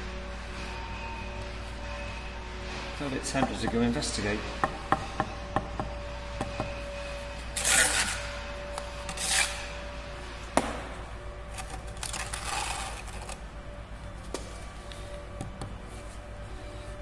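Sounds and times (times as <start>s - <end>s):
trowel scraping mortar joints: 7.6s - 8.2s.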